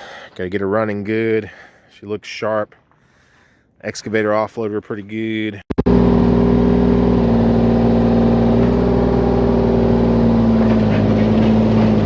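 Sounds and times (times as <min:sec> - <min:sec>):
heavy equipment engine running: 0:05.8 - 0:12.0.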